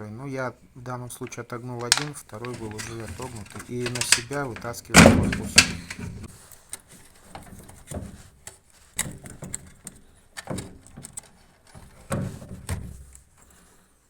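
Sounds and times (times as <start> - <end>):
clicks: 1.8 - 6.3
plastic housing knocking: 1.8 - 6.3
scraping: 1.8 - 6.3.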